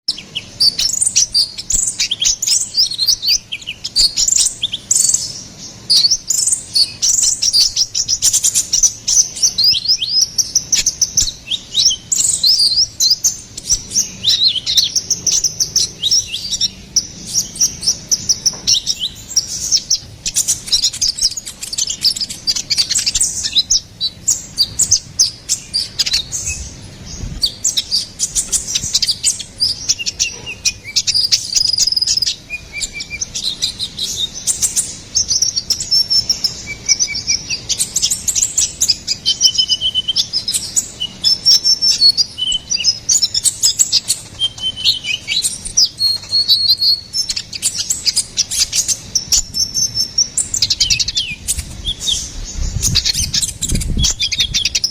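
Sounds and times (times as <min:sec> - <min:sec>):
bird chirping and trilling: 0:00.1 - 0:54.9.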